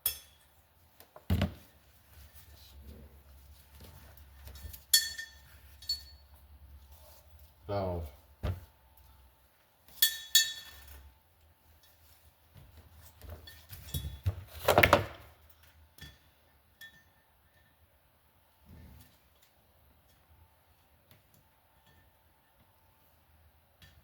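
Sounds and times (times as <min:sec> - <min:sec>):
metal parts and tools clinking: 0:04.4 - 0:06.3, 0:09.9 - 0:11.1.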